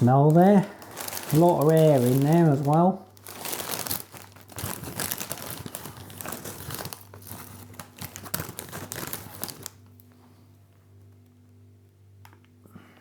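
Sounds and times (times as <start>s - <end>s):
plastic crisp bag crinkling: 0.0s - 10.0s
low steady hum: 0.0s - 13.0s.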